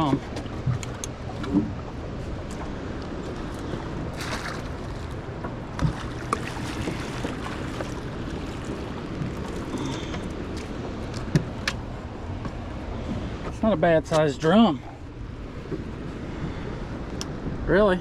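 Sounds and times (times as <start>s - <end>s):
river water washing: 0.0s - 13.4s
wind: 0.0s - 18.0s.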